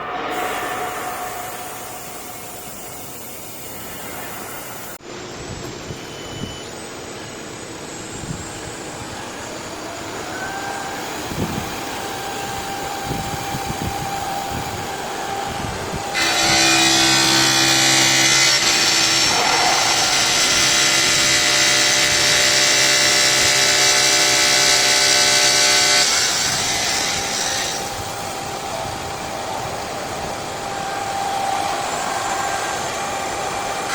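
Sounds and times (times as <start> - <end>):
loud whine with hiss: 0.0 - 33.9
stone saw machine clatter: 16.1 - 28.1.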